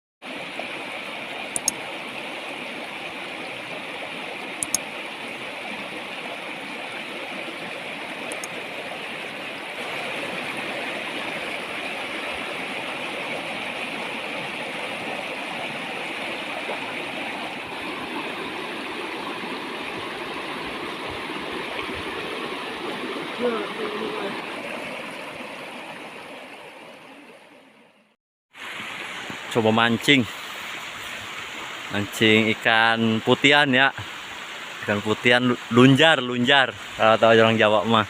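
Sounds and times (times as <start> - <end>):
river water rushing: 0.2 - 28.0, 28.6 - 38.0
faint high-pitched ticks: 4.6 - 4.8.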